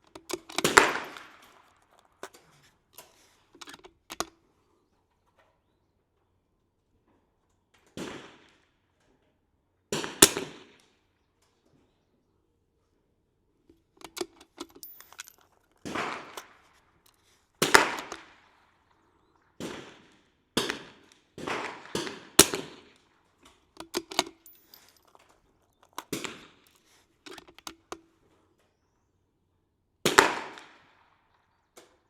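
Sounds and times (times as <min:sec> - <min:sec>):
rifle shots: 0:00.4 - 0:01.6, 0:09.9 - 0:10.8, 0:15.8 - 0:16.6, 0:17.6 - 0:18.4, 0:19.6 - 0:23.0, 0:30.0 - 0:30.9.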